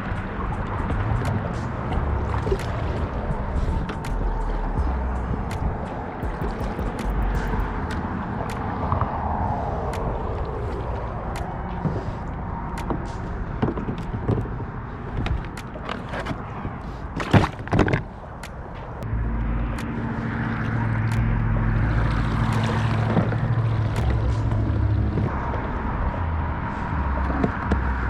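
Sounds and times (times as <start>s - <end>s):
low rumble: 0.0s - 15.6s, 16.4s - 28.0s
wind buffeting microphone: 0.0s - 28.0s
clicks and knocks from gear: 12.8s - 19.0s.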